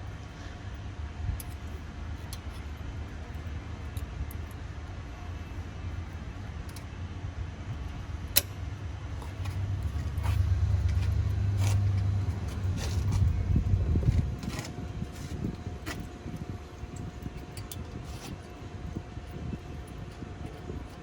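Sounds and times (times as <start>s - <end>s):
metallic clicks of exhaust springs: 1.3s - 5.0s, 7.8s - 21.0s
low rumble: 7.3s - 17.6s.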